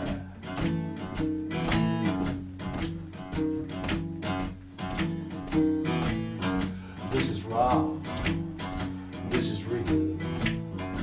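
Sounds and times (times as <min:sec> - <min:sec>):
person singing: 0:00.0 - 0:00.6, 0:07.0 - 0:10.5
acoustic guitar strumming: 0:00.0 - 0:11.0.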